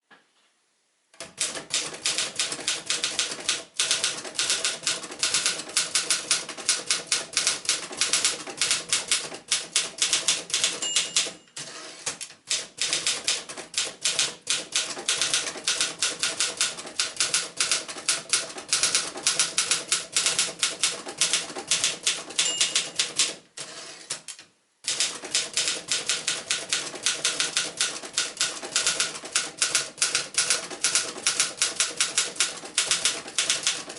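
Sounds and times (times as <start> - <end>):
manual typewriter typing: 1.2 - 33.9
typewriter bell ringing: 10.6 - 11.9, 22.3 - 23.2.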